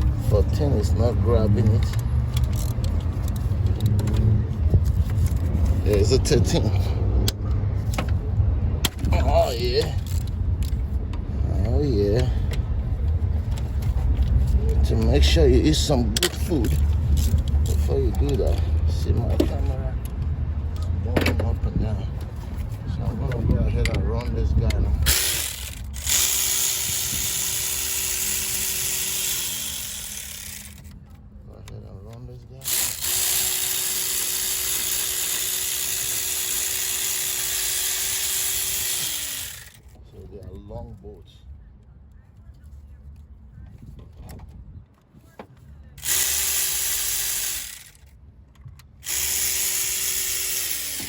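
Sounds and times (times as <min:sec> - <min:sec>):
power tool motor whining: 0:25.0 - 0:30.9, 0:32.6 - 0:39.9, 0:46.0 - 0:48.1, 0:49.0 - 0:51.0.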